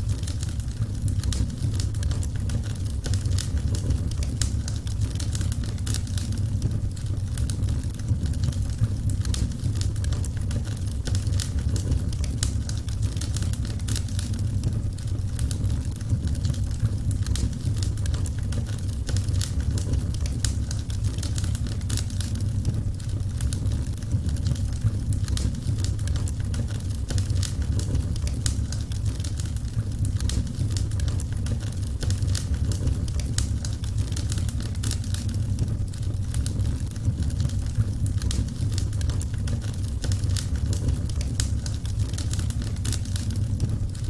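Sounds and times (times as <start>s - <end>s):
low rumble of burning: 0.0s - 44.0s
wood fire crackling and popping: 0.0s - 44.0s.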